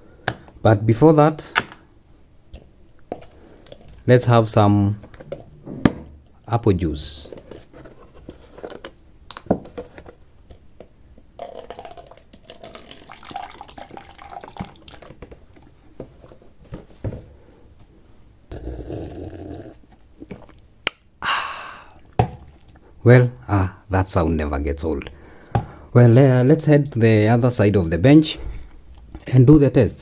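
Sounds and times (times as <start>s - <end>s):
liquid and swallowing: 11.4s - 15.2s
breathy exhale: 21.2s - 22.0s.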